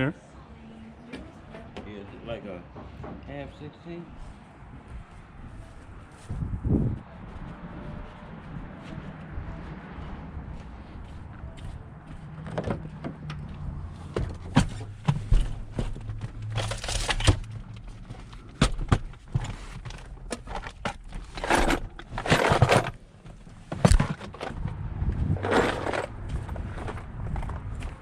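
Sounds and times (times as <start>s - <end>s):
metal scraping and rattling: 14.3s - 18.0s, 19.2s - 23.0s, 23.7s - 27.5s.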